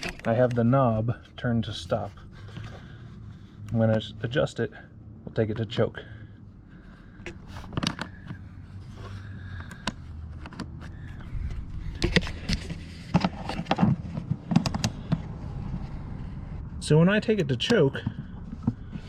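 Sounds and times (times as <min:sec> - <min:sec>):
clicks and knocks on generator controls: 0:09.4 - 0:15.4.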